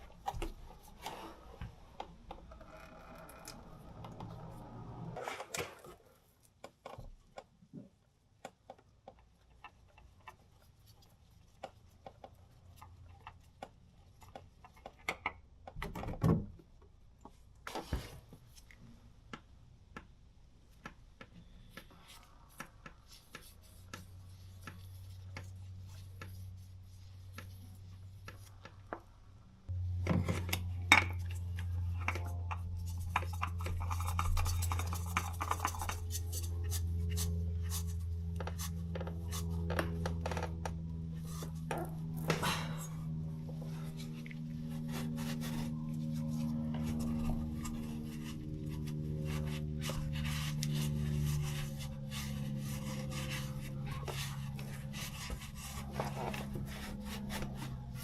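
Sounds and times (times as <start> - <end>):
steady low hum: 21.4 - 58.0.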